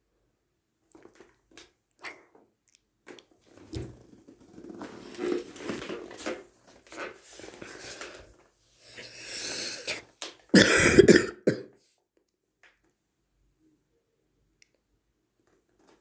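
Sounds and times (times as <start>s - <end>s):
person coughing: 10.6s - 11.7s.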